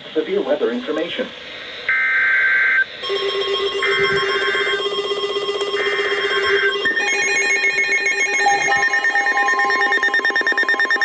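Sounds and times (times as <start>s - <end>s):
screeching digital data bursts: 1.9s - 11.0s
pulsing electronic alert tone: 3.0s - 11.0s
steady tone: 3.0s - 11.0s.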